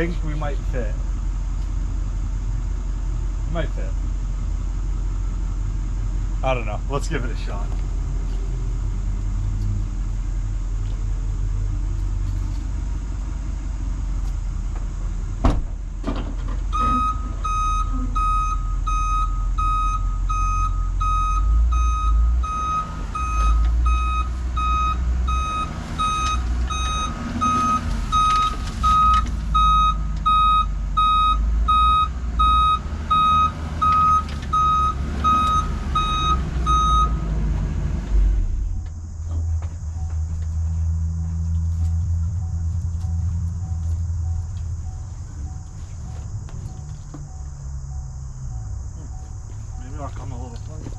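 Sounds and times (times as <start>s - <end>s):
truck engine running: 0.0s - 50.9s
clunk: 14.8s - 18.2s
backup alarm beeping: 16.7s - 37.2s, 42.2s - 50.6s.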